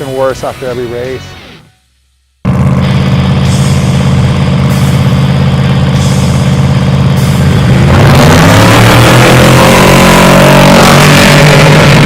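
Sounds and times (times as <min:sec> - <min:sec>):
truck engine revving: 0:02.5 - 0:12.0.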